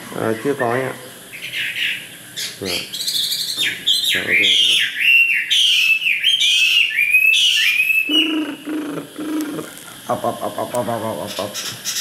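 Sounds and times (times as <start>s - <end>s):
bird singing whistled notes: 1.4s - 8.6s.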